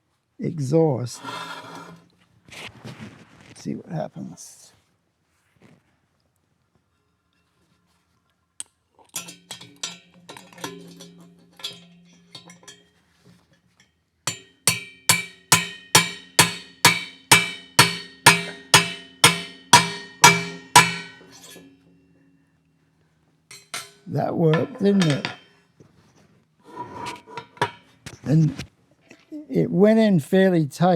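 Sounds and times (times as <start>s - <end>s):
hammer striking metal driver: 9.2s - 12.8s, 14.3s - 21.8s, 23.5s - 25.5s, 27.4s - 27.8s.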